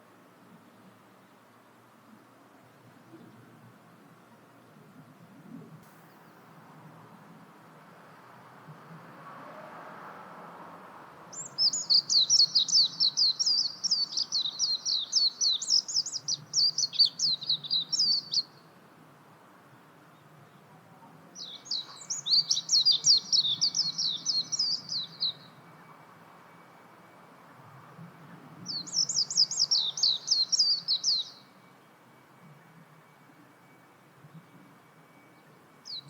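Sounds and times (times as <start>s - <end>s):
bird twittering: 11.3s - 18.5s, 21.4s - 25.6s, 28.7s - 31.5s.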